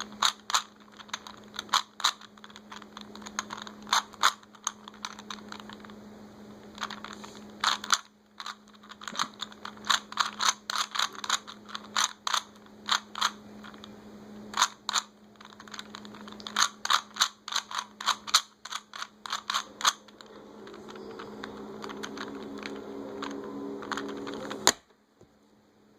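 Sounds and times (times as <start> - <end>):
puzzle cube clicking: 0.0 - 6.0, 6.6 - 24.8
steady low hum: 0.0 - 25.9
humming with held tones: 19.4 - 24.7.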